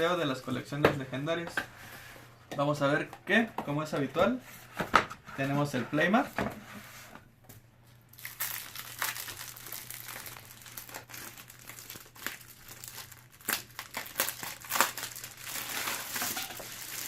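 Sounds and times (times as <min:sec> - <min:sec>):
plastic packaging crinkling: 0:08.0 - 0:17.0.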